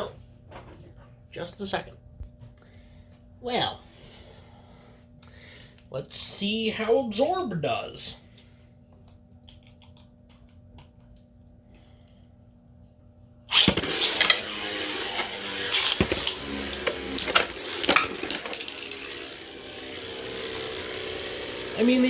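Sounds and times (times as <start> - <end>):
spinning tops clashing in stadium: 13.5 - 22.0.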